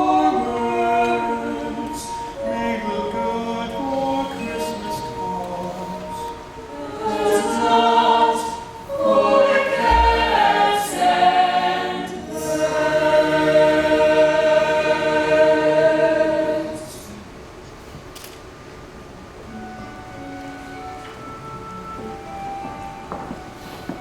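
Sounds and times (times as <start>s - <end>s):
group singing in harmony: 0.0s - 17.2s.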